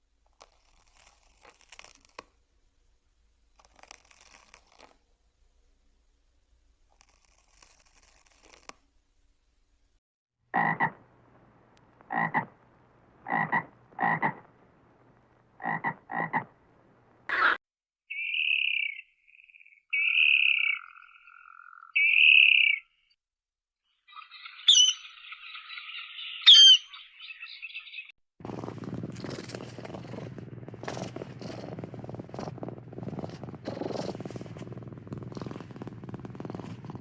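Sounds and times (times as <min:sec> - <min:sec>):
frog croaking: 0:10.5 - 0:11.0, 0:12.0 - 0:12.6, 0:13.2 - 0:14.5, 0:15.6 - 0:16.5.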